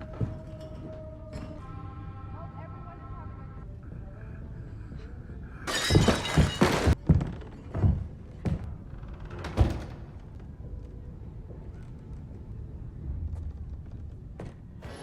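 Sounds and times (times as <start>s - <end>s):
glass shattering: 5.7s - 7.0s.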